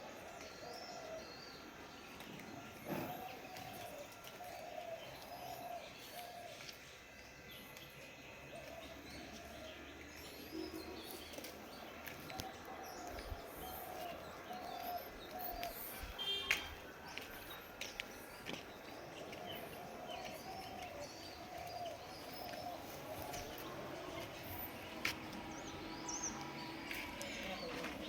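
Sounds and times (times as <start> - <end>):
bird cooing: 2.5 - 6.6, 12.3 - 16.4, 19.0 - 24.8.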